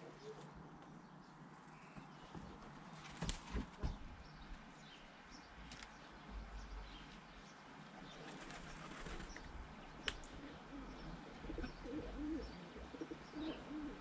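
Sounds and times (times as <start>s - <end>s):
small birds chirping: 0.0s - 14.0s
pigeon cooing: 10.3s - 14.0s.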